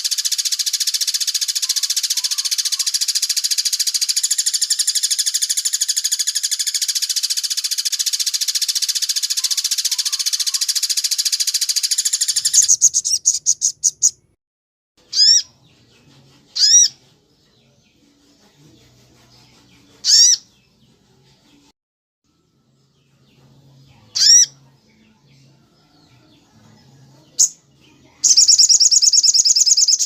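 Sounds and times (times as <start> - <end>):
bird trilling: 0.0 - 14.2, 15.1 - 15.5, 16.6 - 17.0, 20.0 - 20.4, 24.1 - 24.6, 28.2 - 30.0.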